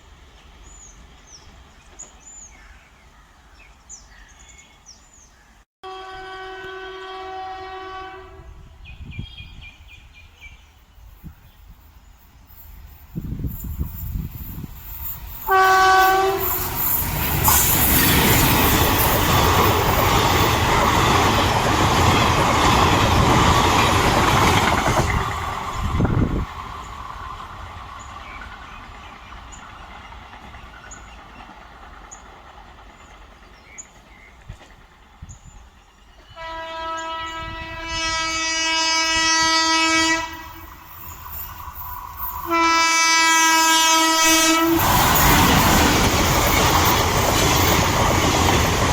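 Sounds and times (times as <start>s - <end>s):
locomotive horn blasts: 5.8s - 8.6s, 15.4s - 16.7s, 36.4s - 40.6s, 42.4s - 44.9s
train wheels rushing on track: 9.5s - 48.9s.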